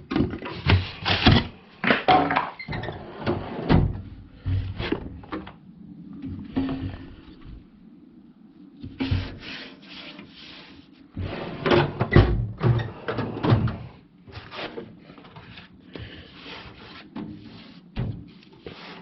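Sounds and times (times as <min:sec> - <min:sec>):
metal drawers sliding and scraping: 0:02.6 - 0:05.4, 0:11.1 - 0:19.0.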